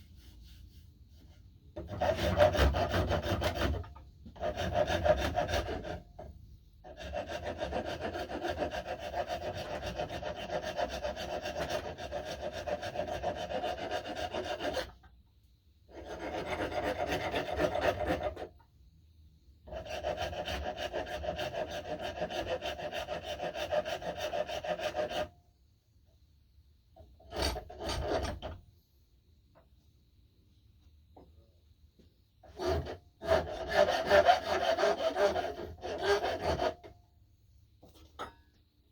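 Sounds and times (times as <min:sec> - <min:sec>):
rasp shaping wood: 0:01.8 - 0:15.1, 0:15.9 - 0:18.6, 0:19.6 - 0:25.3, 0:32.4 - 0:36.9.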